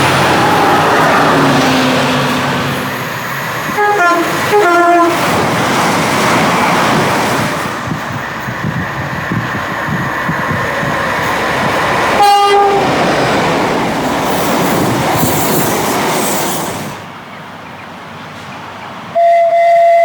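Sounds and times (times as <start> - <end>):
train passing at speed: 0.0 - 20.0
train horn: 3.7 - 5.2, 12.2 - 12.9, 19.2 - 20.0.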